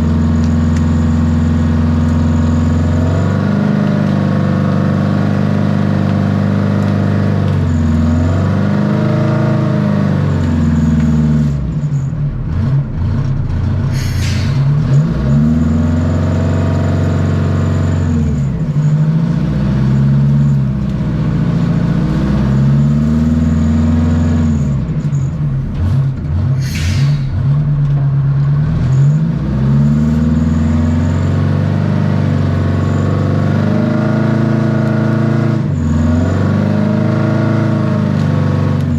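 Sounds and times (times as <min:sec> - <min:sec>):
diesel engine revving: 0:00.0 - 0:38.9
short hisses: 0:13.9 - 0:14.8, 0:26.6 - 0:27.5.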